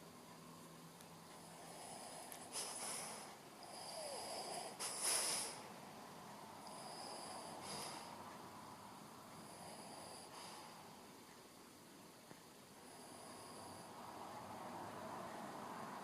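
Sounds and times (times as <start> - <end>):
dog snoring: 1.4 - 5.7, 6.6 - 8.1, 9.4 - 11.0, 12.8 - 15.2.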